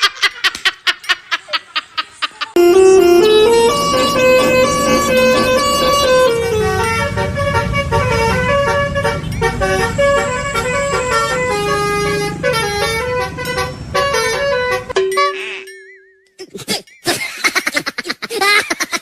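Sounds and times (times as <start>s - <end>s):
bus horn playing melody: 2.6s - 15.6s.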